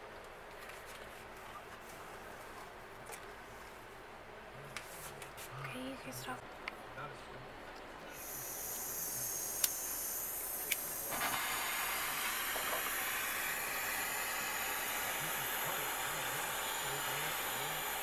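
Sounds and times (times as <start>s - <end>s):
gas torch hissing: 8.1s - 18.0s
torch igniter clicks: 8.7s - 15.1s.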